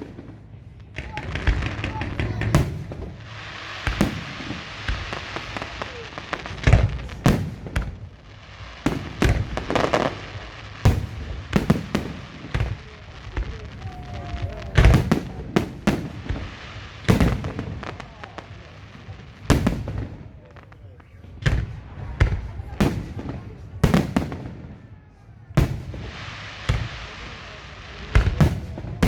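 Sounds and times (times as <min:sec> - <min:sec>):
firework shells bursting: 0:00.0 - 0:13.8
firework crackling: 0:00.0 - 0:29.0.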